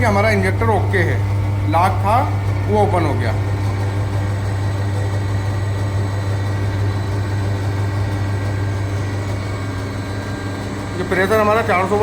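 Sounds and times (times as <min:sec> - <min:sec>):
injector test bench humming: 0:00.0 - 0:12.0.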